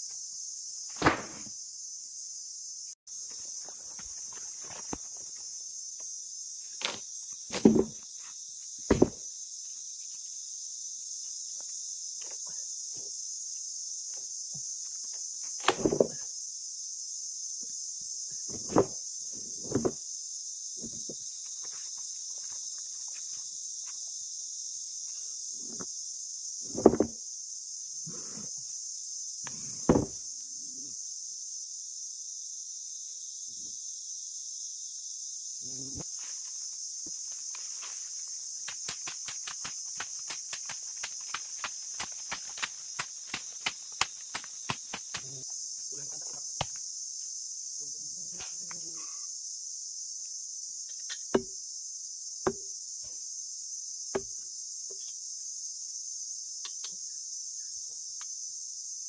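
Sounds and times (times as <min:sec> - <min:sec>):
high-pitched insect drone: 0:00.0 - 0:59.0
sharp knocks and thumps: 0:06.8 - 0:08.0, 0:08.9 - 0:09.2, 0:15.6 - 0:16.2, 0:18.5 - 0:19.0, 0:19.6 - 0:20.0, 0:26.7 - 0:27.2, 0:29.8 - 0:30.2, 0:51.3 - 0:51.6, 0:52.5 - 0:52.7.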